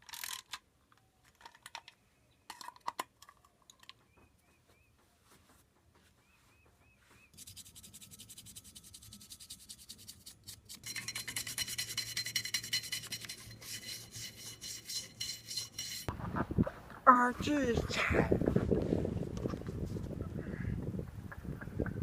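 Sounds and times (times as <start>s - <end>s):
rubbing strokes on hard surface: 5.3s - 16.1s.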